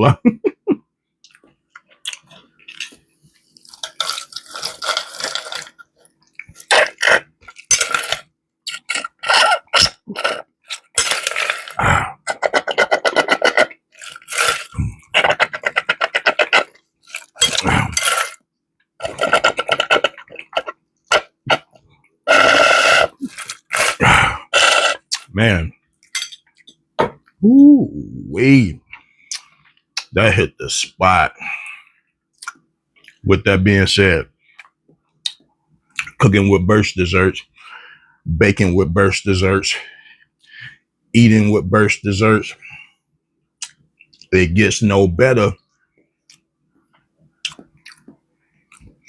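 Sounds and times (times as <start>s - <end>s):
wet chewing and lip smacking: 28.9s - 30.1s, 47.4s - 49.0s.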